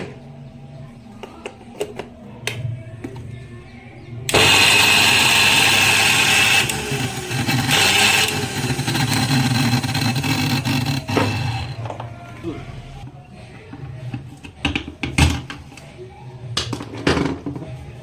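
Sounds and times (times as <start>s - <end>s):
mixer grinder motor running: 4.3s - 11.8s.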